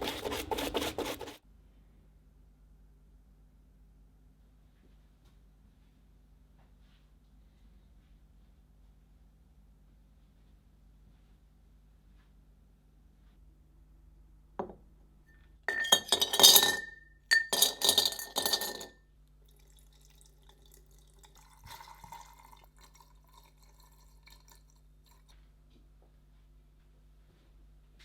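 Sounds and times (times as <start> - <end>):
clinking with ringing tone: 15.7 - 18.9.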